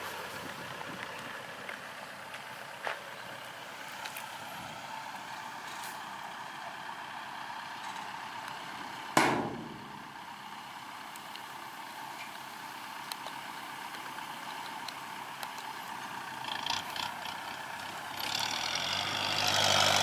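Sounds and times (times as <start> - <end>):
heavy diesel engine running: 0.0 - 20.0.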